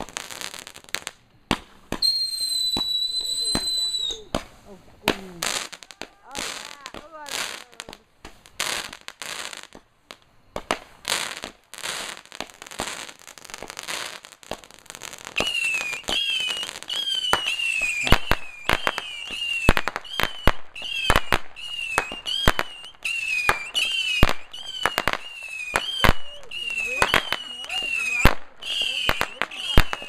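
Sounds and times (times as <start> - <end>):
fireworks hissing and crackling: 0.0 - 30.0
fireworks whistles and bangs: 0.0 - 30.0.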